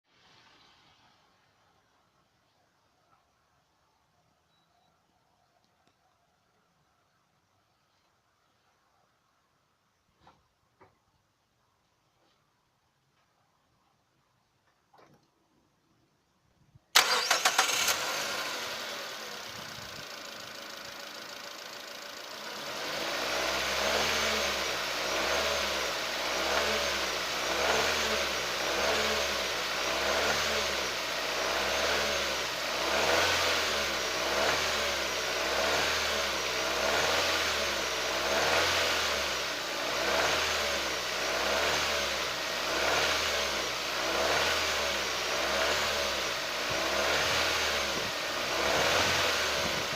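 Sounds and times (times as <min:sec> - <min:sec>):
engine cranking clicks: 0:17.0 - 0:18.2
engine idling: 0:17.0 - 0:27.6.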